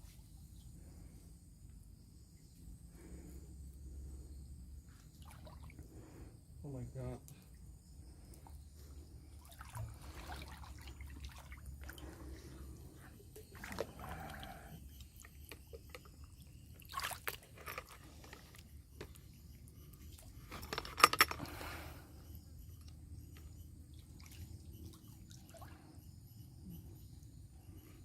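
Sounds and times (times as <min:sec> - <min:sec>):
water sloshing and splashing: 0:05.0 - 0:06.2, 0:08.2 - 0:21.4.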